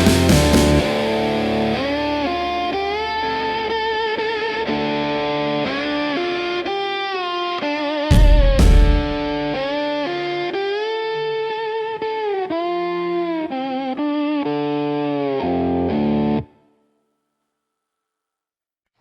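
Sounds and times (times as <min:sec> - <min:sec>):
bass line: 0:00.0 - 0:04.0, 0:08.1 - 0:09.6
electric guitar melody: 0:00.0 - 0:16.7.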